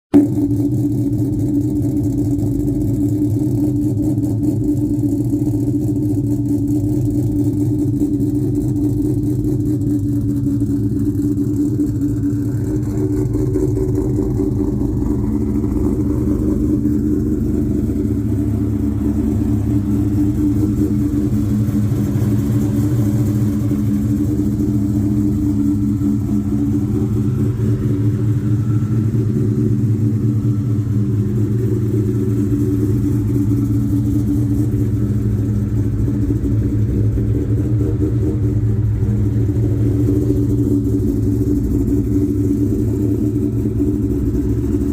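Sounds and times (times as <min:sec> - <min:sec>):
car engine idling loudly: 0:00.1 - 0:44.9.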